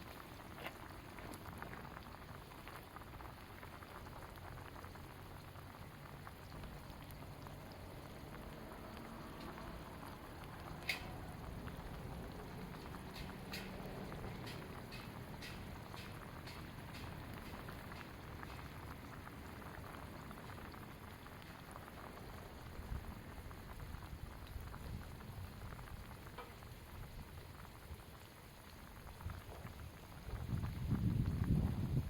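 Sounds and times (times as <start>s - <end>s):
food sizzling: 0.0s - 32.0s
wood fire crackling and popping: 0.0s - 32.0s
wind rumble on microphone: 21.7s - 26.3s, 29.0s - 32.0s.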